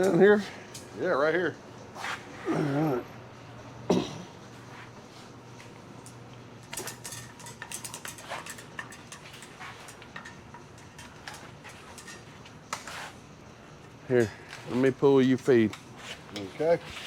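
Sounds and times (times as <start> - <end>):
steady low hum: 0.0 - 17.0
metal tools clinking and rattling: 6.0 - 13.1.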